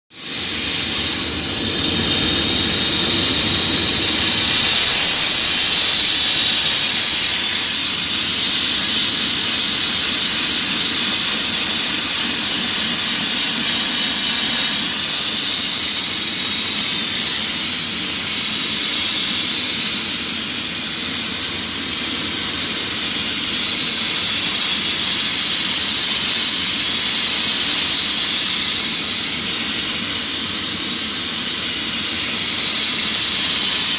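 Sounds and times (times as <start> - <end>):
abrasive blaster hissing: 0.2 - 15.3.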